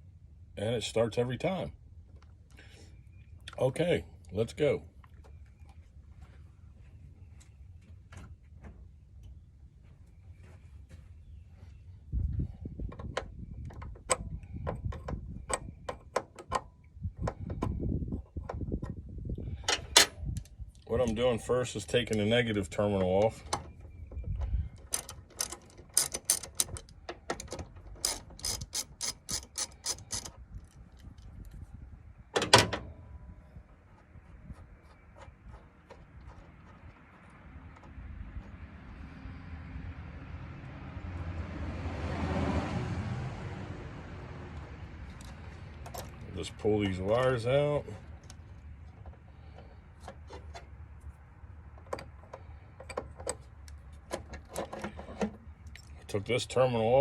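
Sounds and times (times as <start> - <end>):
hand ratchet clicking: 28.0 - 30.3.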